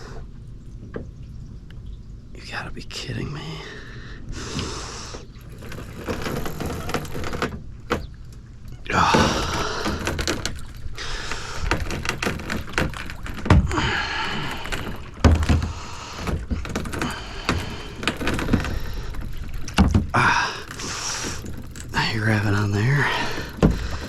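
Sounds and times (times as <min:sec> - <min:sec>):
hard thumps: 0:09.0 - 0:24.0
knocking and handling noise: 0:11.6 - 0:24.0.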